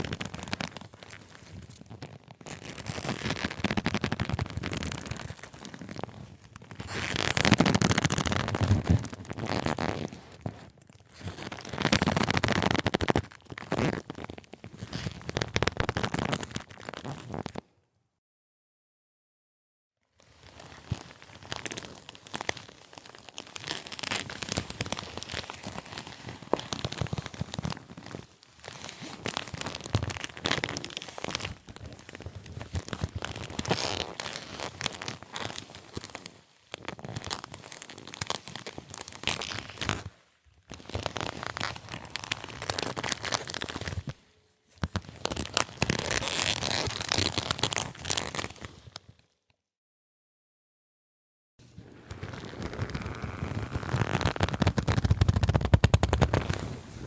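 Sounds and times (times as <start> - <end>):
leather creaking: 0.0 - 17.6, 20.3 - 49.0, 51.7 - 57.0.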